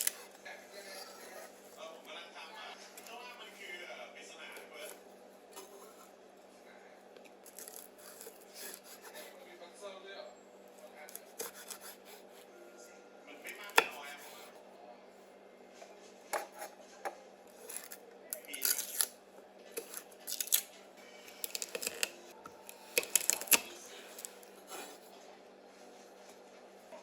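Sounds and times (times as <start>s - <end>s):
utensils and dishes clinking: 17.5s - 25.0s.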